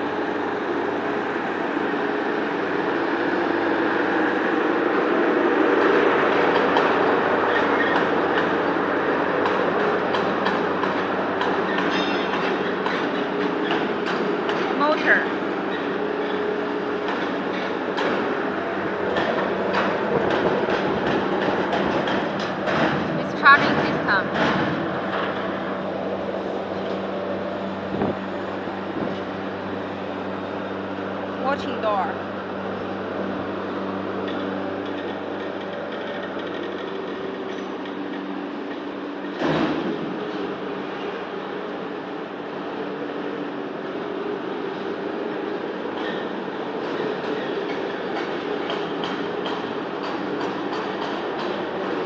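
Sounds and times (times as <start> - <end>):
machinery droning: 0.0 - 39.3.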